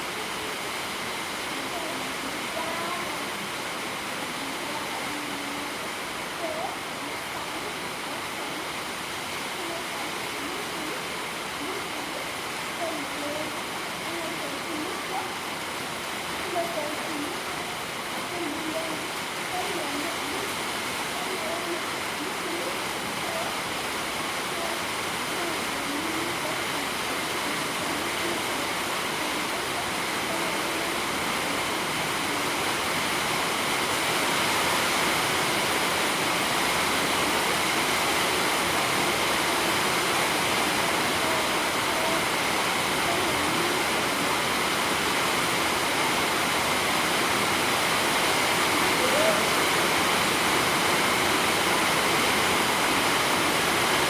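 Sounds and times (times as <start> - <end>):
faint voices: 0.0 - 54.0.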